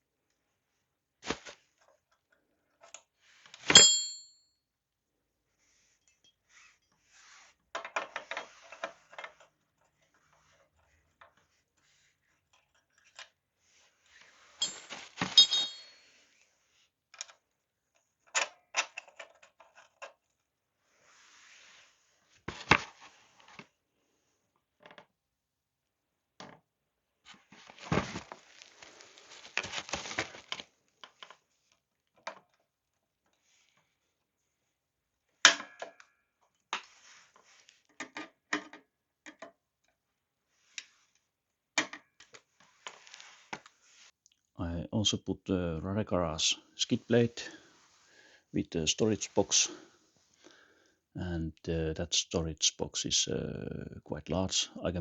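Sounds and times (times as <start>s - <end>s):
metal tools clinking and rattling: 3.7s - 4.3s, 14.6s - 16.0s
sharp metal clanks: 3.7s - 4.4s, 14.6s - 15.9s.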